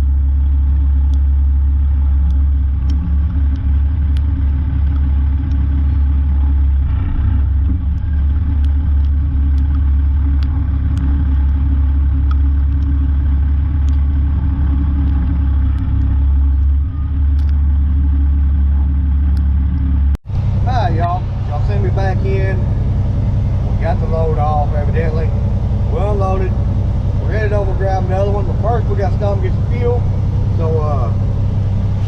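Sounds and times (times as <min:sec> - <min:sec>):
diesel truck engine droning: 0:00.0 - 0:32.0
faint clicks: 0:13.8 - 0:14.3.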